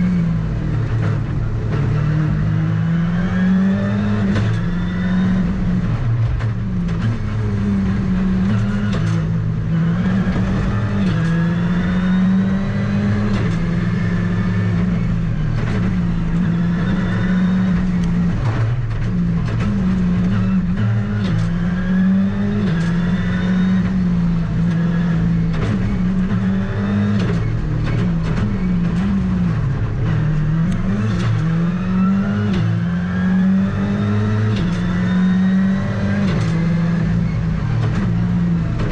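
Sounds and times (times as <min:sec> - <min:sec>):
rally car engine revving: 0:00.0 - 0:38.9.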